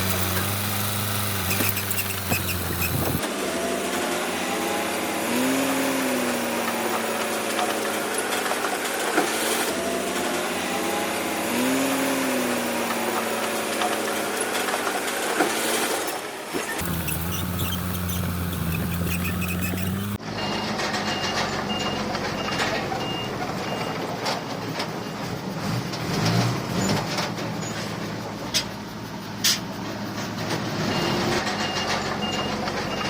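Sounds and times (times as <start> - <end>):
heavy machinery diesel engine running: 0.0 - 20.2.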